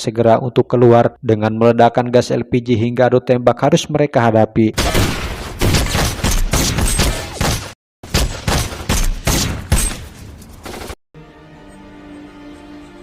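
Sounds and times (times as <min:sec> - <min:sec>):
rapid gunfire: 0:04.8 - 0:09.9.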